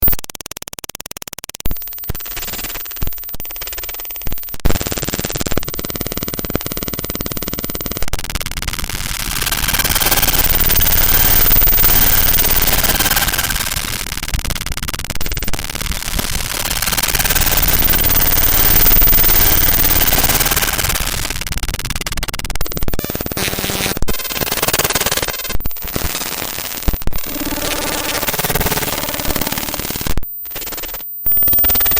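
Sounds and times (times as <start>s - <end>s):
stuttering digital noise bursts: 1.7s - 31.9s
short buzzing tone: 25.6s - 31.9s.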